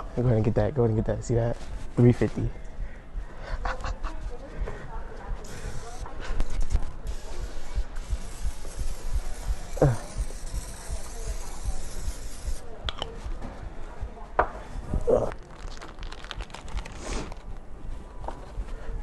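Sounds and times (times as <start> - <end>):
aerosol spray hissing: 5.4 - 12.6.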